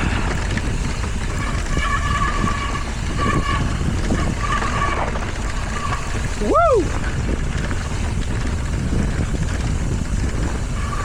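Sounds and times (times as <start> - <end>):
disc brakes squealing: 0.0 - 6.9
tyres rolling on dirt: 0.0 - 11.0
wind on microphone: 0.0 - 11.0.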